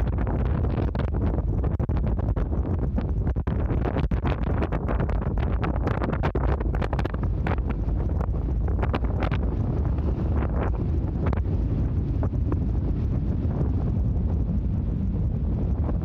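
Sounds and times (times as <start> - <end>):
low steady rumble: 0.0 - 16.0
wind buffeting microphone: 0.0 - 16.0.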